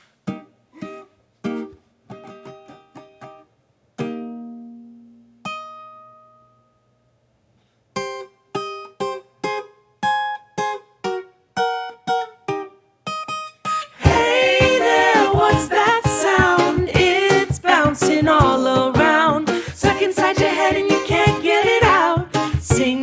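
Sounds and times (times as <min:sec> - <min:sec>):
rhythmic strumming: 0:08.0 - 0:23.0
plucked string notes: 0:14.0 - 0:23.0.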